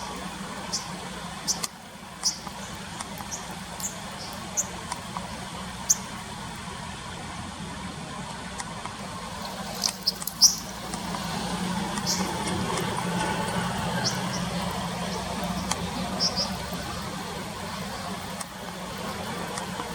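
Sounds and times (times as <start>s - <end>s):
small bird chirping: 0.0s - 4.8s, 5.8s - 6.1s, 9.4s - 11.0s, 11.9s - 17.0s
stream water running: 0.0s - 19.9s.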